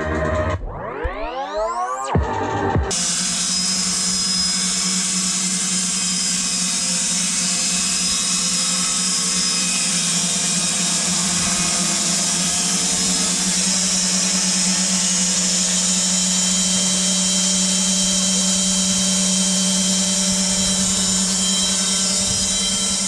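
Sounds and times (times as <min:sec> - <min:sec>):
sawmill machinery humming: 0:02.4 - 0:23.0.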